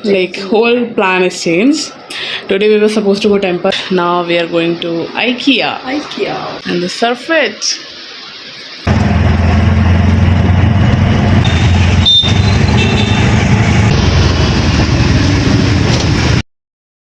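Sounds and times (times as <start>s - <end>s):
traffic noise with low rumble: 0.0s - 16.4s.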